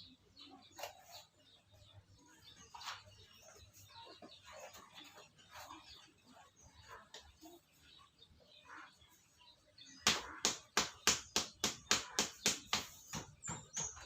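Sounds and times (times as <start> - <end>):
faint bird chirps: 0.0 - 10.5.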